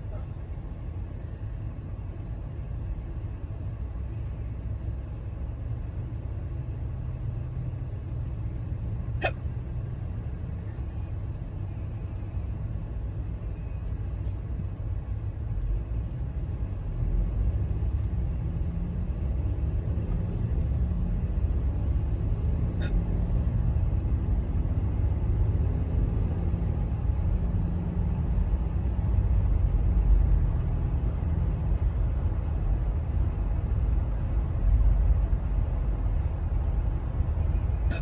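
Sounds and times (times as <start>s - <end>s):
person hiccuping: 9.2s - 9.4s.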